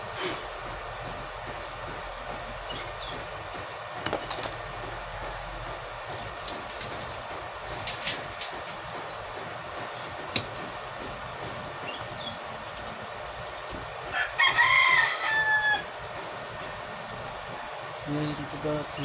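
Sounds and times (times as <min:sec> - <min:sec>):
arc welding crackling hiss: 0:00.0 - 0:02.2, 0:05.5 - 0:08.8
sharp welding pops: 0:13.7 - 0:14.1.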